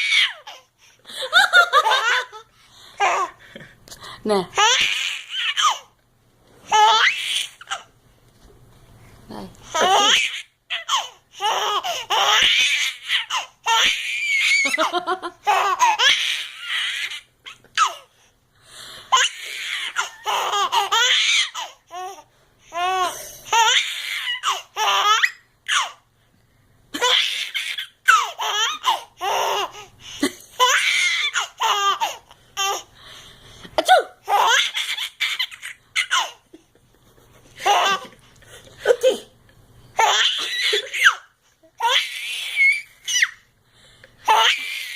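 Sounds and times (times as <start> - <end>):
baby laughing: 1.3 - 3.4, 4.6 - 5.9, 6.7 - 7.9, 9.8 - 18.1, 19.1 - 22.2, 22.8 - 26.0, 26.9 - 32.9, 33.8 - 38.2, 40.0 - 43.4.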